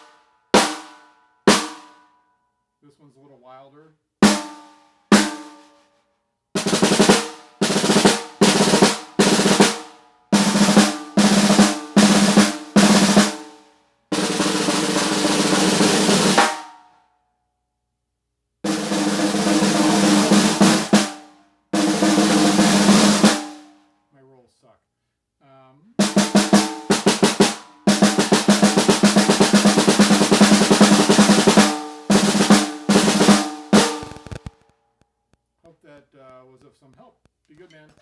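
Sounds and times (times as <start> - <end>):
snare drum strokes and rolls: 0.0 - 1.9, 4.2 - 5.8, 6.6 - 16.8, 18.7 - 23.8, 26.0 - 34.6.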